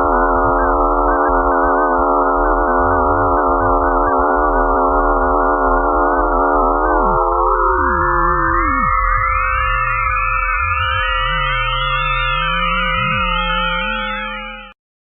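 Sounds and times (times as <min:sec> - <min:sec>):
electronic drone chord: 0:00.0 - 0:14.8
tone sliding down in pitch: 0:06.2 - 0:14.8.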